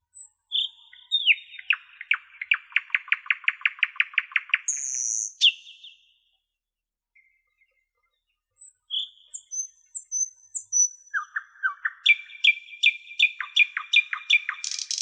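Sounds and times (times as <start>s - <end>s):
songbirds chirping and whistling: 0.0s - 6.3s, 7.2s - 15.0s.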